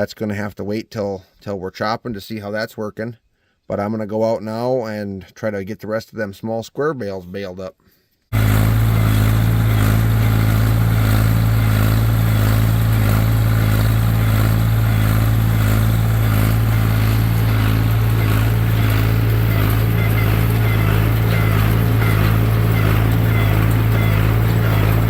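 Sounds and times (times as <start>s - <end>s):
tractor engine droning: 8.3s - 25.0s.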